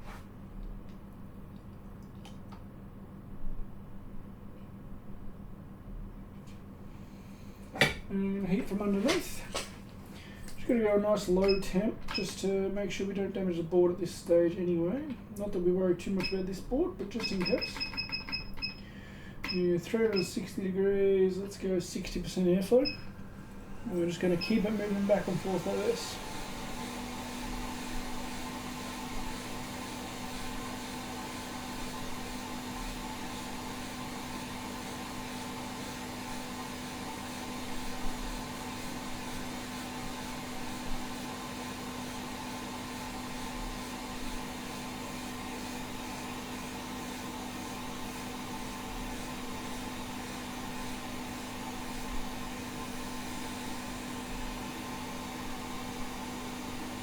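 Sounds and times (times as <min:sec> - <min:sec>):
hot air blower rushing: 0:23.1 - 0:57.0.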